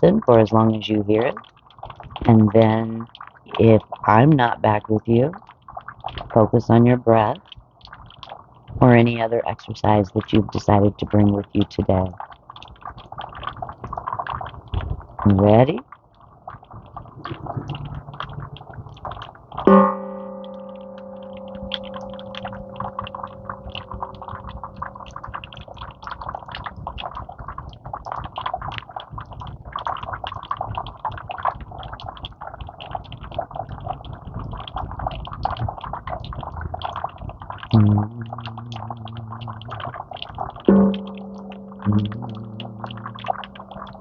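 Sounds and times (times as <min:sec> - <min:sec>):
small clicks and rustling: 0:12.2 - 0:19.7
chime ringing: 0:19.7 - 0:24.9.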